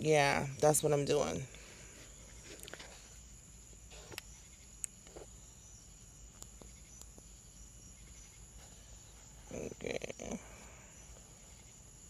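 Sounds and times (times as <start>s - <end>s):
faint high-pitched whine: 0.0s - 12.0s
faint small clicks and rustles: 2.0s - 3.2s.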